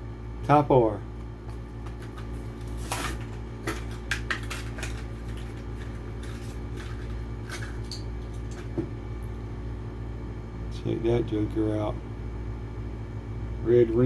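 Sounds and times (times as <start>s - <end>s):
plastic and cardboard crinkling: 1.6s - 8.7s.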